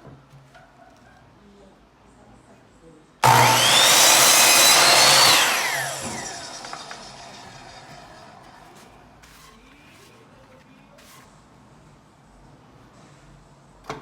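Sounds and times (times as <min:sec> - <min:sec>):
power saw cutting wood: 0:03.2 - 0:09.5.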